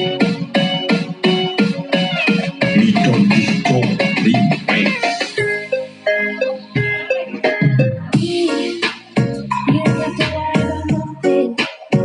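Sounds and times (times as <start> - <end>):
electronic remix music: 0.0 - 12.0.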